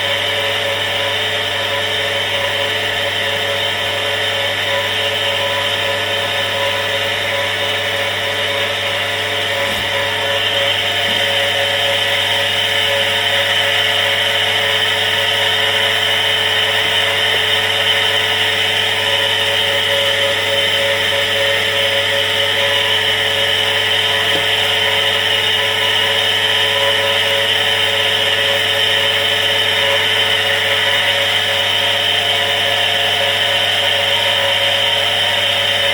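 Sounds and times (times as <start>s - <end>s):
electric water pump humming: 0.0s - 35.9s
pump hiss: 8.3s - 35.9s.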